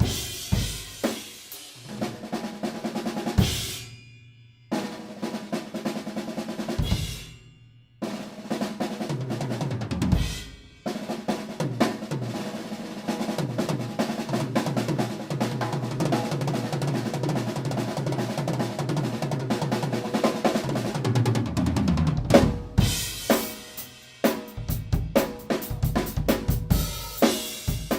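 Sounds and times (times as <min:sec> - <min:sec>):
drum kit solo: 0:00.0 - 0:04.0, 0:04.7 - 0:27.9.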